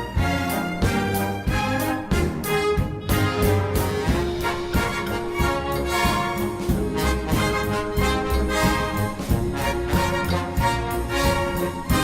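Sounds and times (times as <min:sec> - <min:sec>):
orchestral music with brass: 0:00.0 - 0:12.0.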